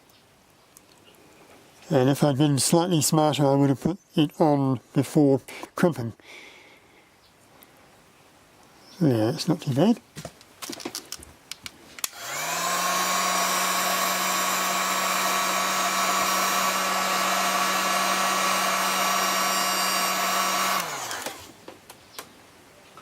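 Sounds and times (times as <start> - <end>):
heat gun fan blowing: 12.0 - 21.6.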